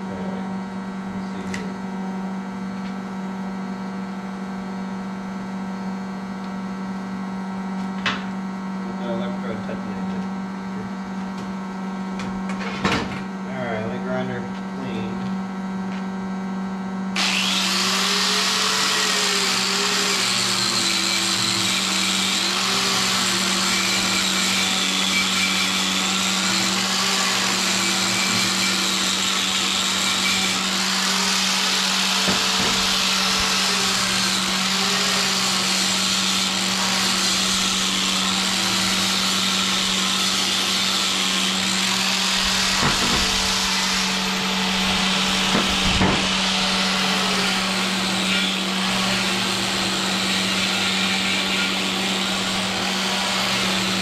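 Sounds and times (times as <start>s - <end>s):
grinder grinding metal: 17.2s - 54.0s.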